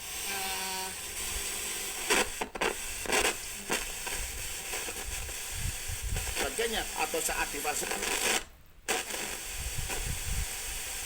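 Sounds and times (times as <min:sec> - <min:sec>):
crackling bursts: 0:00.0 - 0:11.0
held tones: 0:00.0 - 0:11.0
steady hiss: 0:00.0 - 0:11.0
radio playing through small speaker: 0:02.0 - 0:10.0.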